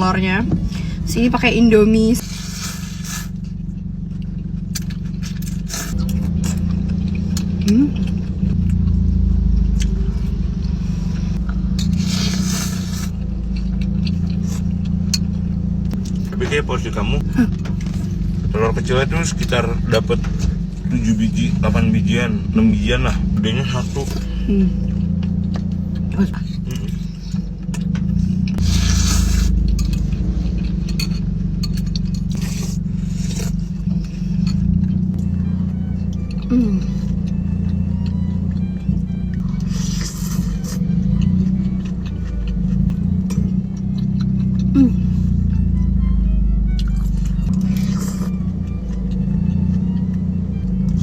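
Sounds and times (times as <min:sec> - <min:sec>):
car engine humming: 0:00.0 - 0:51.0
steady low rumble: 0:00.0 - 0:51.0.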